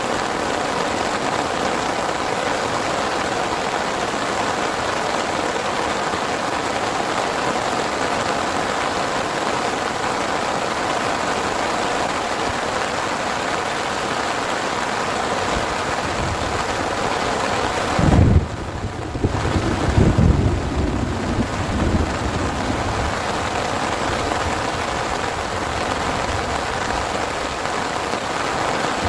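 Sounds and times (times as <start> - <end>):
heavy rain: 0.0 - 29.0
wind buffeting microphone: 15.6 - 27.1.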